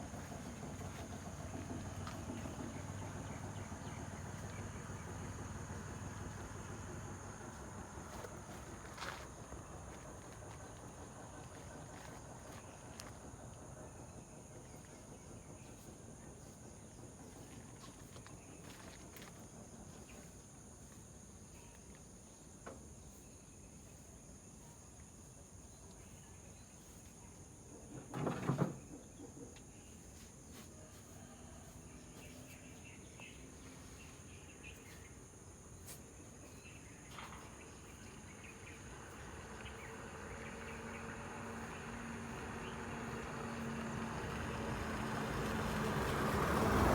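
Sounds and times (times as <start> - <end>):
insects trilling: 13.9 - 46.9.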